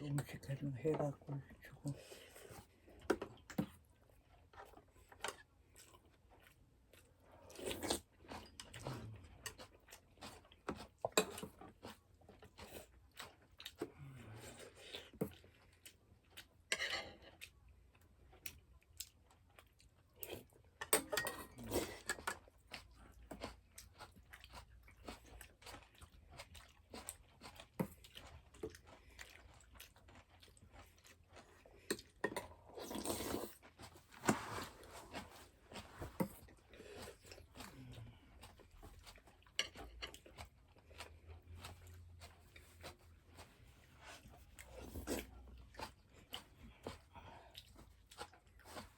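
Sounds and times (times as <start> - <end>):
person chewing and crunching food: 1.0 - 48.9.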